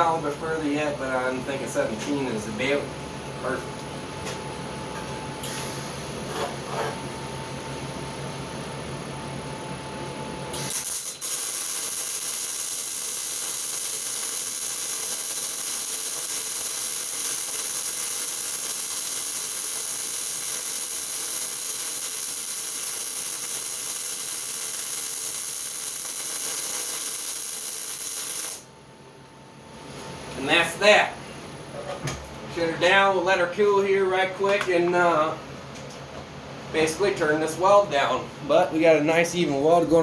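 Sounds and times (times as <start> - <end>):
welding arc crackling: 10.5 - 28.7.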